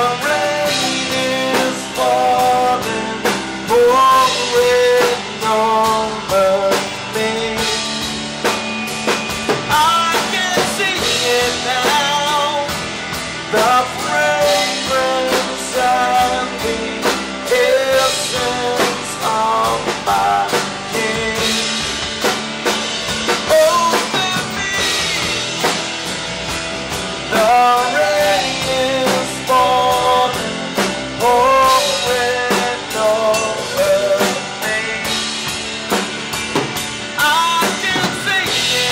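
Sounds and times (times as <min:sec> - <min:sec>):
melodic lead line with vibrato: 0:00.0 - 0:38.9
rock band playing live: 0:00.0 - 0:38.9.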